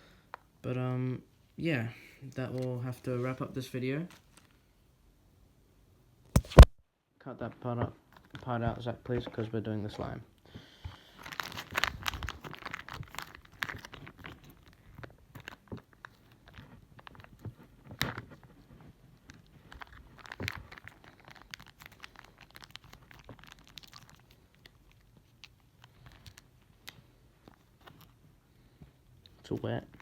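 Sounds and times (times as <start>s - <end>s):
plastic packaging crinkling and tearing: 10.9s - 28.2s.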